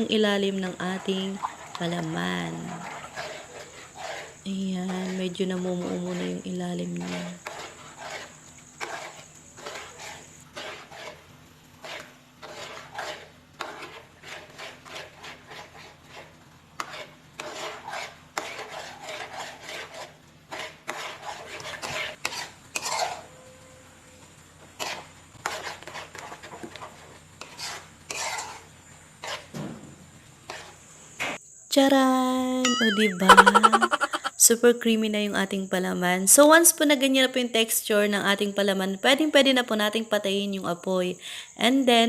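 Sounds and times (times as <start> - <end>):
utensil scraping bottom of pan: 1.0 - 23.4, 24.8 - 29.6.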